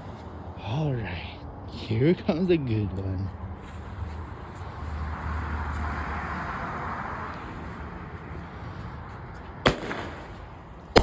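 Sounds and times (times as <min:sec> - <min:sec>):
firework bangs: 0:09.6 - 0:11.0
firework hissing: 0:09.7 - 0:10.4.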